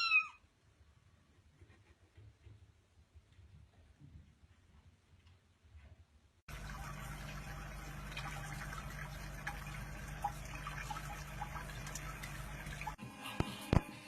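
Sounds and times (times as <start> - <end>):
running water rushing: 6.5 - 13.0.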